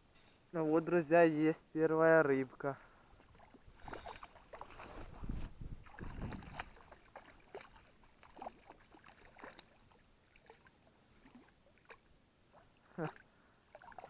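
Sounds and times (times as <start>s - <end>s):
water splashing and sloshing: 3.1s - 14.0s.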